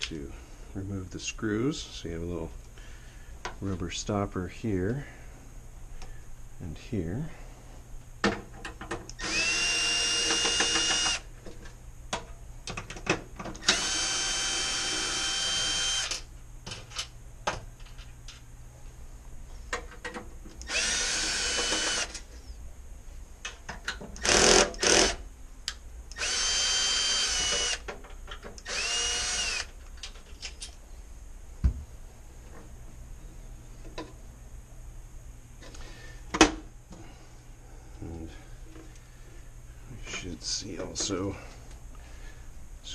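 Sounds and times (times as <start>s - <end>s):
power drill whining: 9.2s - 11.2s, 13.6s - 16.2s, 20.6s - 22.2s, 24.2s - 25.2s, 26.1s - 27.8s, 28.6s - 29.7s.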